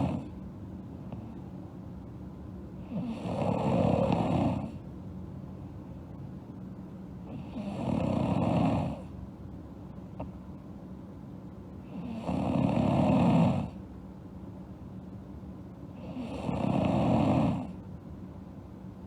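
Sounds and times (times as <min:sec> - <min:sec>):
girl snoring: 0:00.0 - 0:00.3, 0:02.9 - 0:04.8, 0:07.3 - 0:09.0, 0:11.9 - 0:13.8, 0:16.0 - 0:17.8.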